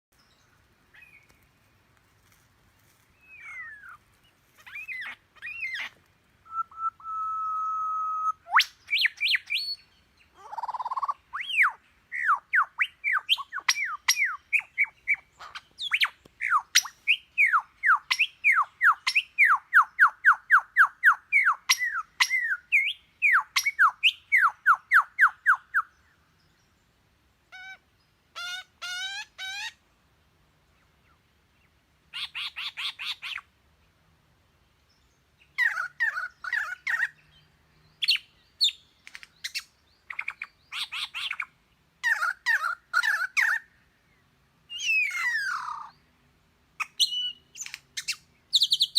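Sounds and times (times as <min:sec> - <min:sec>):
imitated bird calls: 0:03.2 - 0:04.0, 0:04.6 - 0:06.0, 0:08.2 - 0:25.9, 0:32.1 - 0:33.5, 0:35.5 - 0:37.2, 0:38.0 - 0:43.7, 0:44.7 - 0:46.0.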